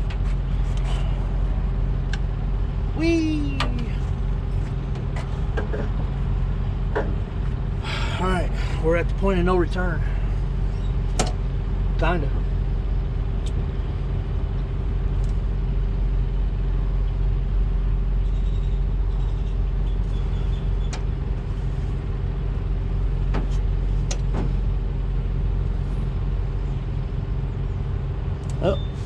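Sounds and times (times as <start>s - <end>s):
engine idling: 0.0s - 29.0s.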